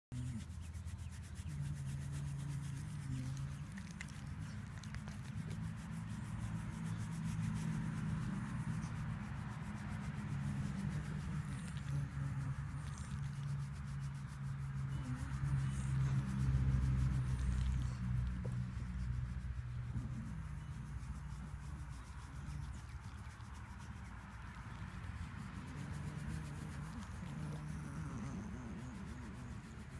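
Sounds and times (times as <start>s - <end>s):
fingers rubbing through fur: 0.1s - 29.9s
dog grumbling: 25.9s - 29.9s.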